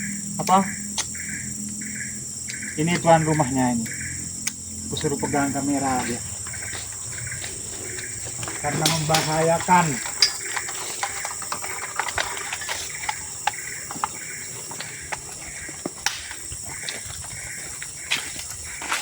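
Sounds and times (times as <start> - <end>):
insects chirping: 0.0 - 19.0.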